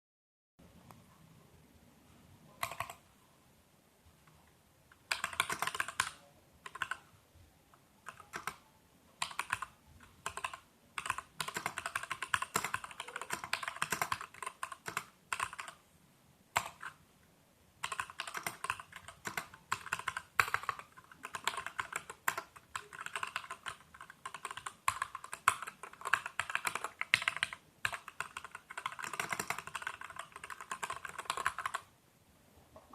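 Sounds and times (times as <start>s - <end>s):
mechanical keyboard typing: 2.6s - 3.0s, 5.0s - 7.0s, 8.0s - 8.6s, 9.2s - 15.8s, 16.6s - 17.0s, 17.8s - 31.9s.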